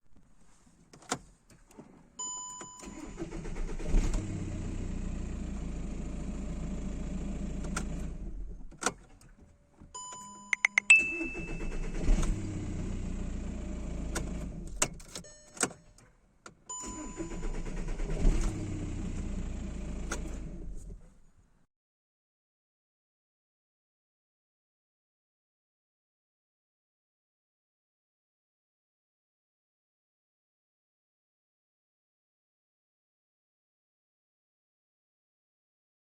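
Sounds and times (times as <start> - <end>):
diesel engine starting and running: 2.8 - 9.4, 10.6 - 15.2, 16.7 - 21.1
ignition clicks: 7.5 - 8.1, 10.0 - 12.5, 14.0 - 21.0
dashboard chime tones: 10.5 - 11.8.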